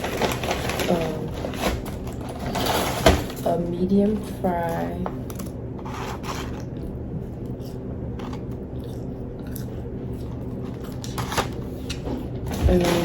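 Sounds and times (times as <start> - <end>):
paper packaging rustling: 0.0 - 4.7, 5.8 - 6.7, 10.6 - 13.0
steady low hum: 0.0 - 13.0.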